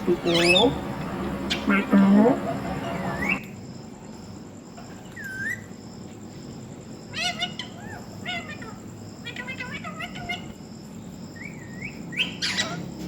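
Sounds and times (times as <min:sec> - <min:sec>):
parrot chirping calls: 0:00.0 - 0:03.5, 0:05.1 - 0:05.7, 0:07.1 - 0:10.6, 0:11.4 - 0:13.0
parrot whistling: 0:00.1 - 0:03.4.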